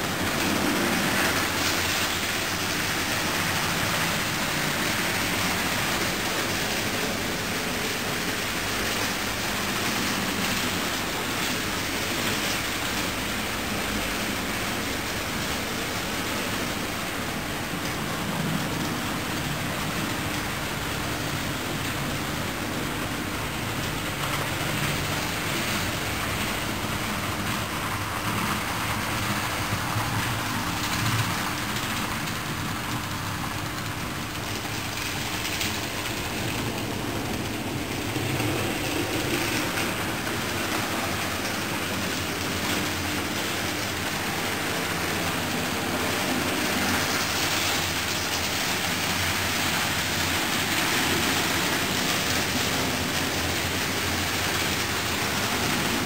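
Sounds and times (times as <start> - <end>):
model train running on track: 0.0 - 56.0
steady hiss: 0.0 - 56.0.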